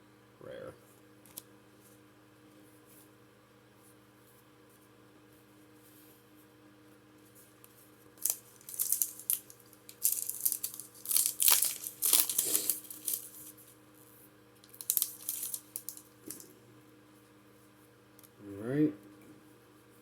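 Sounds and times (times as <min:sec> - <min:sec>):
foil wrapper crinkling and tearing: 0:08.2 - 0:16.5.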